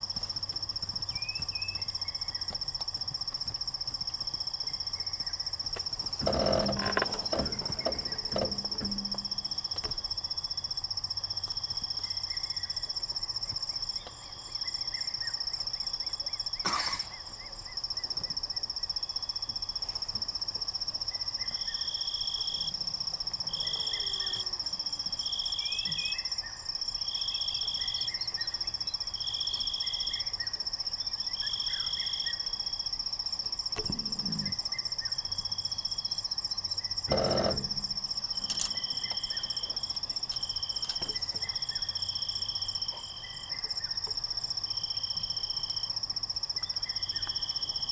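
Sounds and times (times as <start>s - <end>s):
crickets trilling: 0.0s - 47.9s
sharp knocks: 5.8s - 10.0s.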